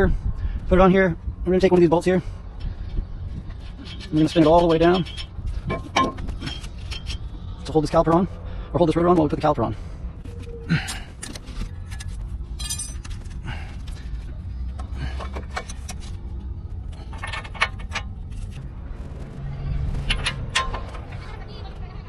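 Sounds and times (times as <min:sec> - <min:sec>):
metal jingle: 0:12.5 - 0:13.2.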